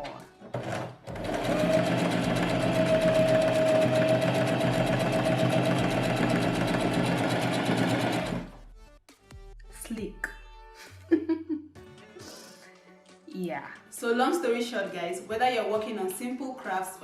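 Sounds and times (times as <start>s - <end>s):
sewing machine running: 0.5s - 8.6s.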